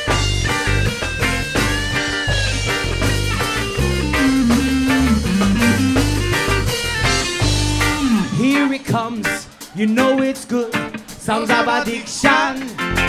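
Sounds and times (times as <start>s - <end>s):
bass and drum groove: 0.0s - 10.0s
reggae guitar melody: 0.0s - 13.0s.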